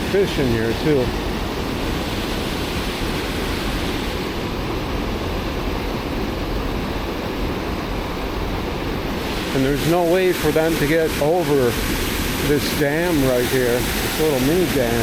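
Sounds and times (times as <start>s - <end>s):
water pouring over a dam: 9.2s - 15.0s.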